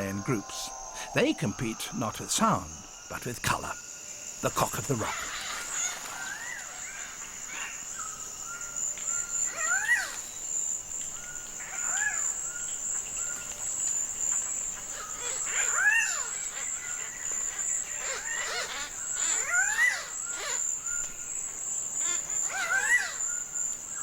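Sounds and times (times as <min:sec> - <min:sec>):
high-pitched insect drone: 0:00.0 - 0:24.0
loud harsh bird calls: 0:04.8 - 0:08.2, 0:09.2 - 0:10.3, 0:14.6 - 0:24.0.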